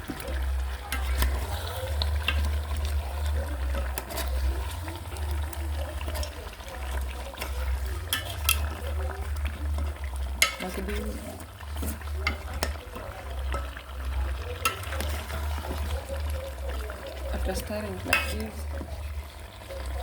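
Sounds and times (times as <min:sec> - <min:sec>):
chicken frying in fat: 0:00.0 - 0:20.0.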